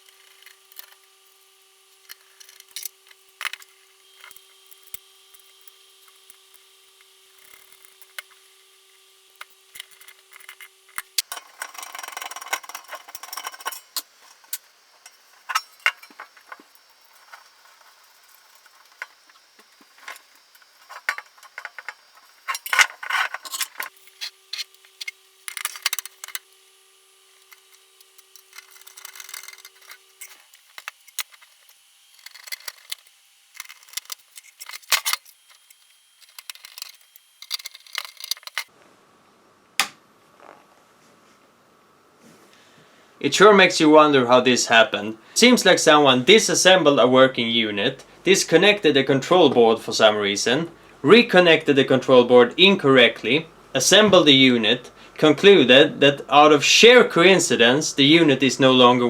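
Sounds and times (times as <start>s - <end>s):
faint steady hum: 0.0s - 59.0s
clicks and knocks of handled parts: 2.0s - 8.5s, 9.3s - 26.5s, 27.3s - 38.7s
scraping: 2.0s - 26.6s, 27.3s - 38.7s.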